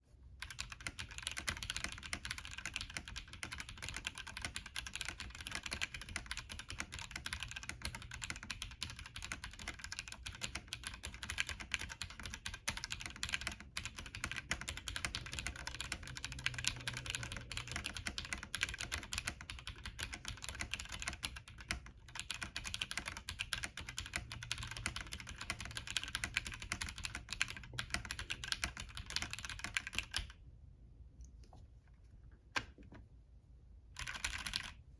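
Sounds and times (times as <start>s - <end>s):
mechanical keyboard typing: 0.4s - 30.4s, 34.0s - 34.8s.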